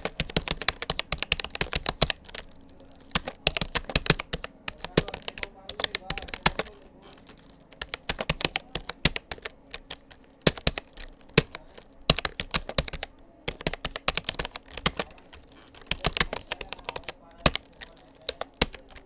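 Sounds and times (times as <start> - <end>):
keyboard key clicks: 0.0 - 19.0.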